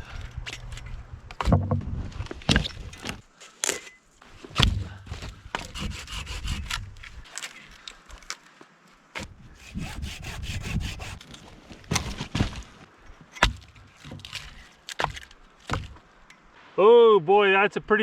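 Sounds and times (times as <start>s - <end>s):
sharp knocks: 4.5s - 6.9s, 13.4s - 16.0s
hand saw rasping on wood: 4.6s - 7.2s, 9.2s - 11.4s.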